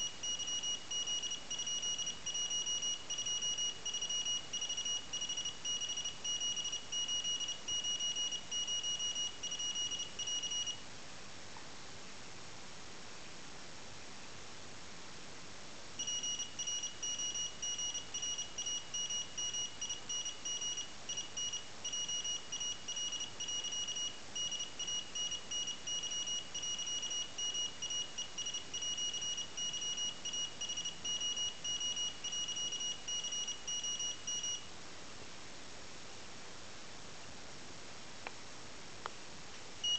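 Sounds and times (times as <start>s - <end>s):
morse code beeper tone: 0.0s - 10.8s, 16.0s - 34.6s.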